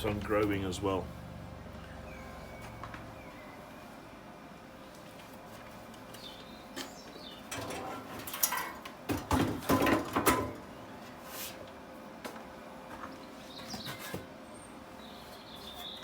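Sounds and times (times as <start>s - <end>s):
tools knocking and clattering: 7.5s - 10.6s.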